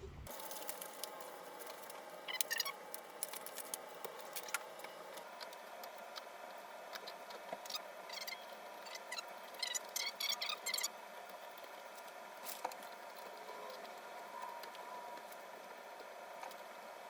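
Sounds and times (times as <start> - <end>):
faint room hum: 0.0 - 17.0
packaging rustling: 0.3 - 5.3.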